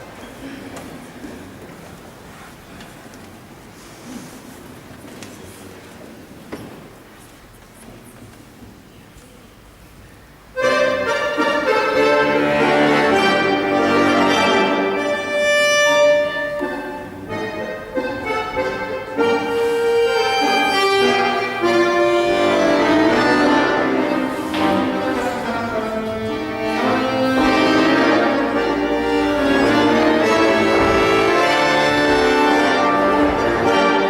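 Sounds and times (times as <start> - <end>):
accordion music: 10.5 - 34.0.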